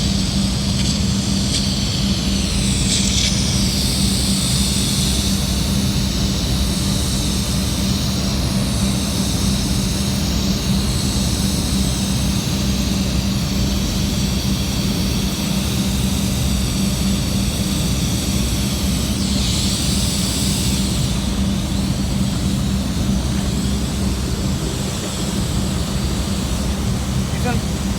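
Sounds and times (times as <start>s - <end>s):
welder high hiss: 0.0s - 27.9s
welder low hum: 17.7s - 27.9s.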